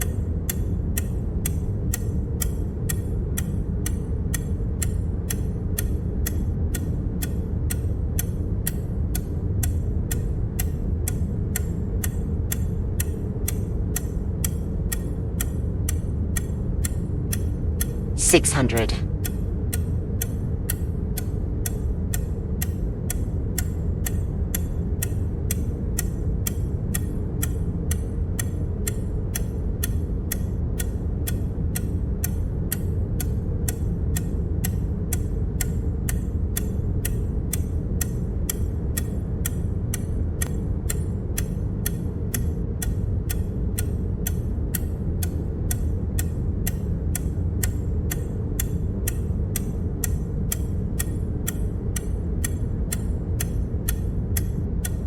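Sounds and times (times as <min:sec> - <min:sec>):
click sound effect: 0:18.2 - 0:19.1.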